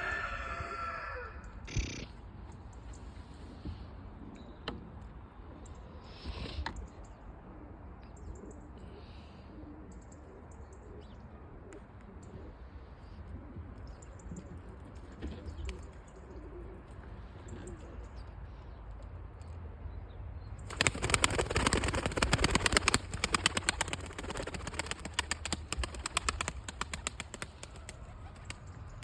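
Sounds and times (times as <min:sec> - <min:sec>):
pigeon wings flapping: 0:20.7 - 0:29.0.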